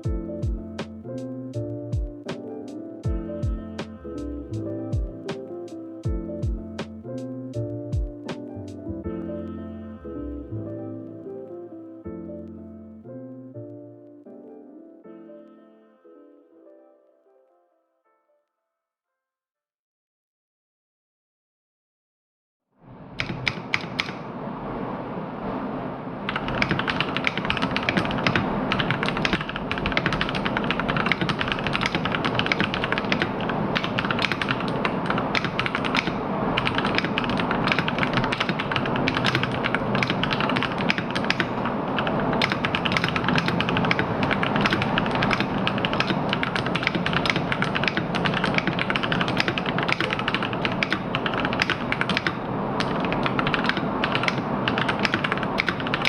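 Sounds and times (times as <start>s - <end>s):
fast mechanical keyboard typing: 23.2s - 24.2s, 26.3s - 56.0s.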